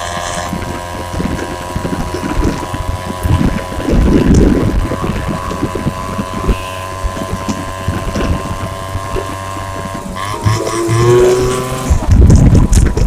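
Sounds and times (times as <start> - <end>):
two-stroke engine running: 0.0 - 13.0.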